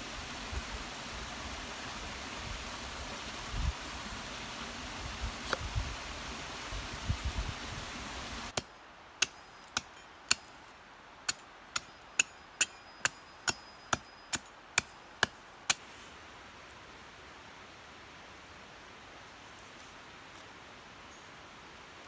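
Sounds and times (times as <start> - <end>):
hammer strikes with faint ring: 11.3 - 15.4.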